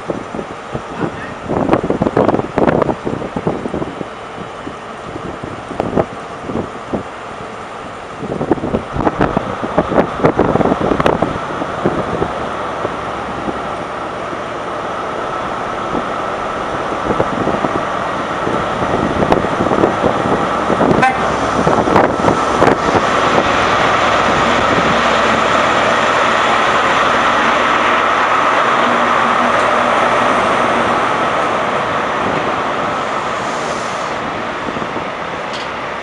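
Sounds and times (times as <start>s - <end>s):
diesel train engines pulling away: 0.0s - 36.0s.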